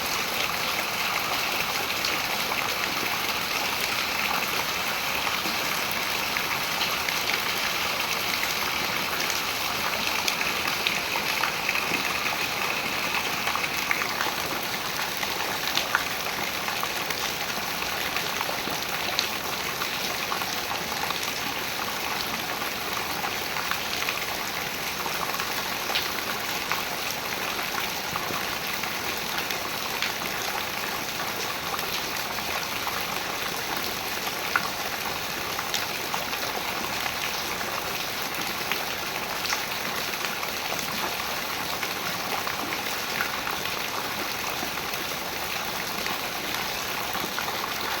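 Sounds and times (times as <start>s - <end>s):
rain falling on water: 0.0s - 48.0s.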